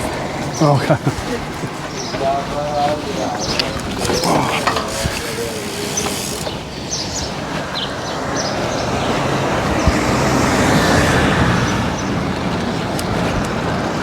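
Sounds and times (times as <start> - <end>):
road vehicle rushing: 0.0 - 14.0.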